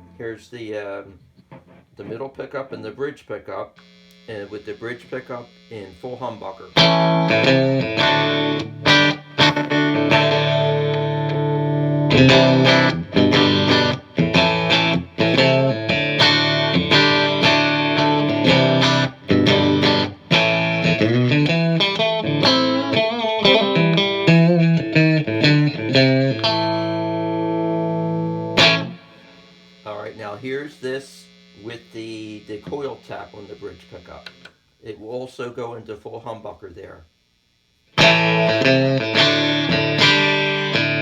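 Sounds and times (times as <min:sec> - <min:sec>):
faint amp hum: 0:00.0 - 0:41.0
clean electric guitar: 0:06.7 - 0:30.2, 0:37.9 - 0:41.0.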